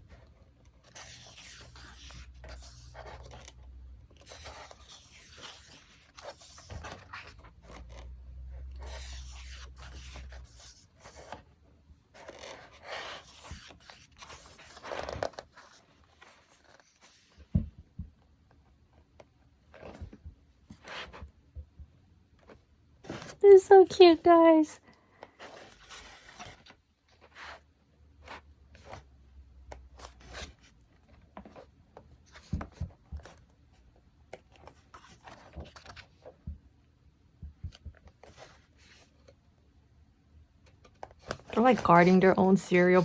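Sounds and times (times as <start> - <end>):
paper pages rustling: 12.1 - 17.6, 25.3 - 27.6.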